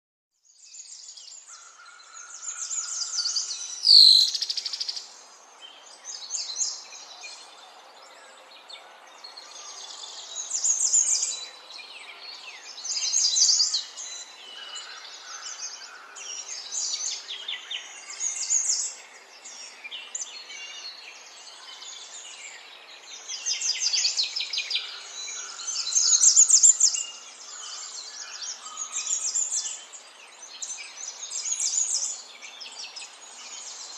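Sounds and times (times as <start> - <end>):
small birds chirping: 0.4 - 33.9
loud sweeping bird call: 3.8 - 4.8.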